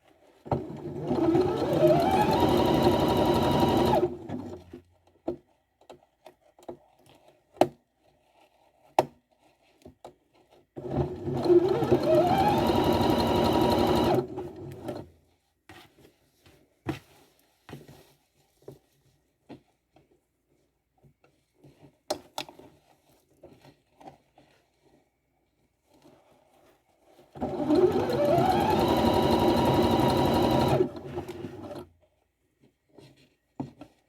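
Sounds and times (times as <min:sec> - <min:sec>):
electric sewing machine whirring: 0:00.6 - 0:04.6, 0:10.8 - 0:15.0, 0:27.4 - 0:31.8.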